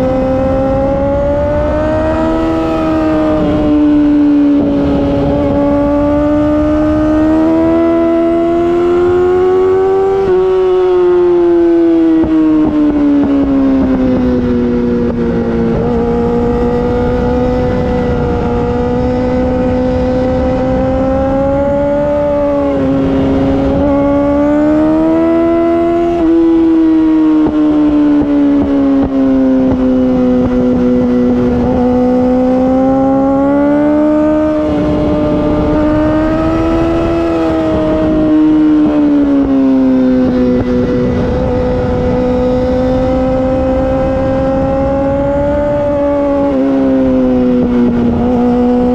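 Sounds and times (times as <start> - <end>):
motorcycle engine at high revs: 0.0 - 48.9
wind rushing: 13.6 - 27.8, 30.0 - 48.9.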